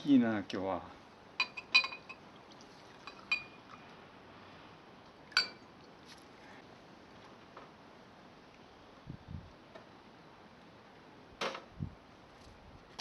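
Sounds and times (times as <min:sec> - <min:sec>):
tableware clinking: 0:01.4 - 0:02.2, 0:03.1 - 0:03.6, 0:05.4 - 0:05.6.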